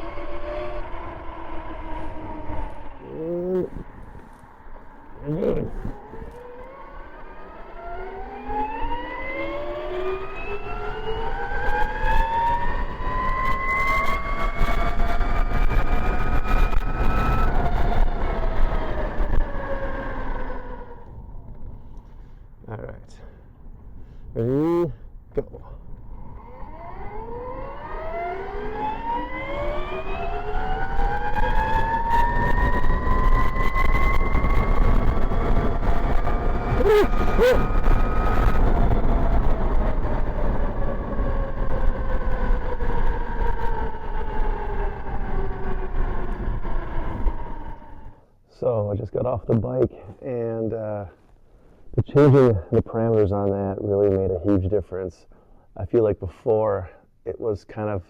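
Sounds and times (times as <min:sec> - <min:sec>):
wind rumble: 0:00.0 - 0:50.0
low rumble: 0:14.2 - 0:27.6
electric motor whining: 0:26.0 - 0:39.7.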